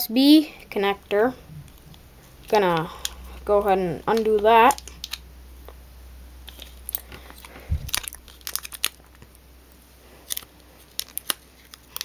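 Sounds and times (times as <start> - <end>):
plastic packaging crinkling: 1.6 - 5.8, 6.4 - 9.4, 10.1 - 12.0.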